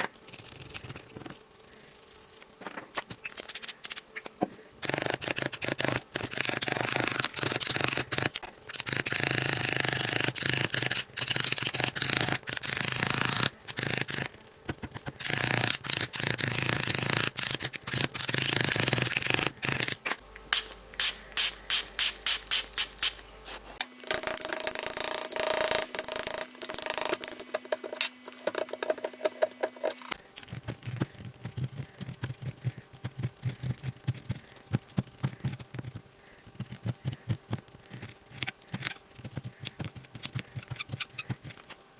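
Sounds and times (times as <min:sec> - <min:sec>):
faint low hum: 0:27.2 - 0:41.9.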